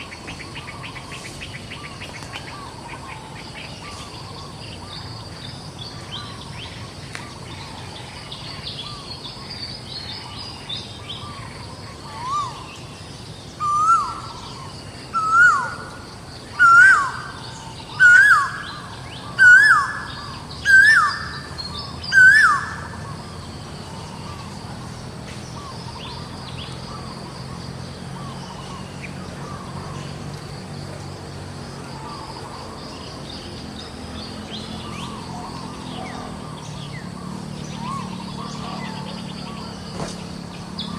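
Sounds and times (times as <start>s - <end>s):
insects: 0.0s - 40.9s
bird calling loudly: 16.5s - 23.2s.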